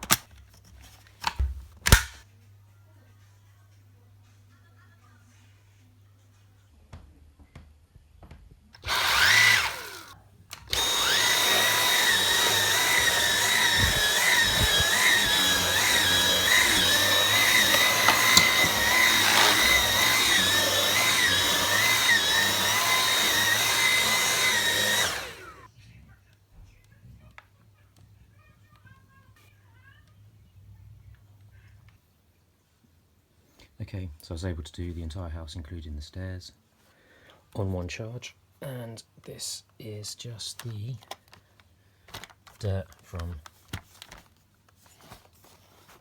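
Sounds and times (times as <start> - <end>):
cordless vacuum motor whining: 1.2 - 2.2, 8.8 - 25.7.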